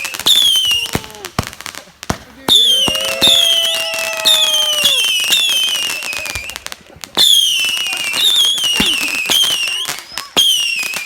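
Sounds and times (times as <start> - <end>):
whistling fireworks: 0.0 - 11.0.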